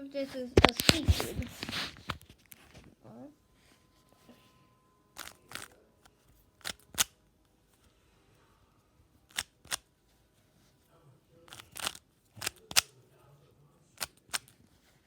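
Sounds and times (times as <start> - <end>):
speed cube clacking: 5.2 - 5.7, 6.6 - 7.1, 9.3 - 9.8, 11.5 - 12.9.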